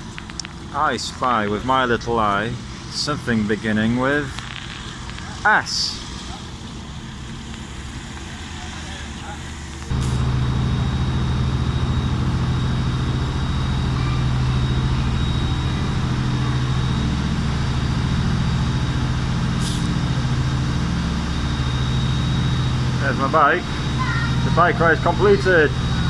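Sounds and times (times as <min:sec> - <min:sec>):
ferry engines droning: 0:00.0 - 0:26.0
brief hiss: 0:19.6 - 0:19.9.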